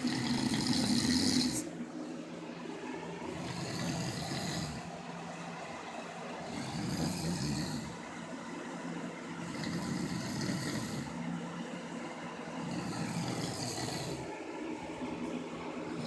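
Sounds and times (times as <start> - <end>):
cat snoring: 0.0 - 1.7, 3.3 - 5.0, 6.5 - 8.1, 9.4 - 11.2, 12.6 - 14.3.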